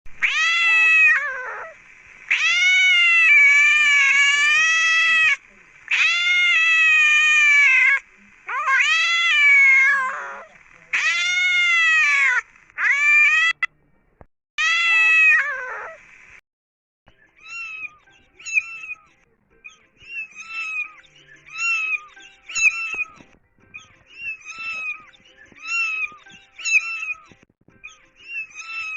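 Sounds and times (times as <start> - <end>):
cat meowing: 0.2 - 13.7, 14.6 - 16.0, 17.4 - 28.9
kitten mewing: 0.2 - 13.7, 19.7 - 27.3, 28.3 - 28.9.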